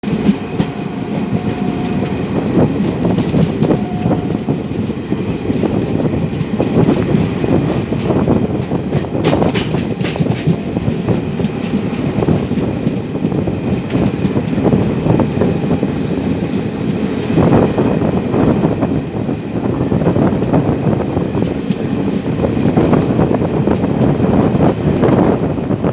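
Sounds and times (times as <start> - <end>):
train rumble: 0.0 - 25.9
train wheels clattering: 0.0 - 25.9.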